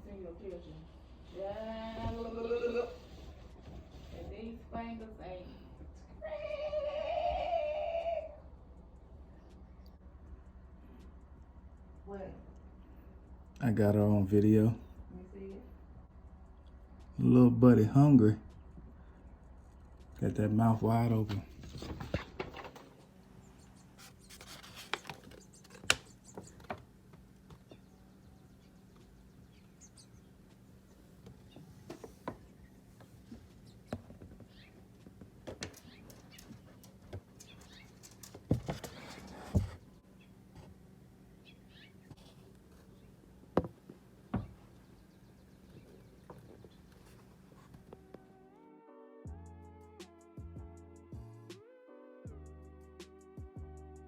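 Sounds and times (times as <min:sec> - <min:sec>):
faint steady hum: 0:00.0 - 0:48.6
nestling birds cheeping: 0:22.7 - 0:43.4, 0:44.1 - 0:47.5.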